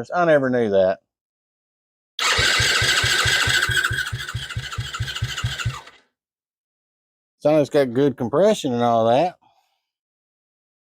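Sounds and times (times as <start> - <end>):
electric starter cranking engine: 2.2 - 6.1.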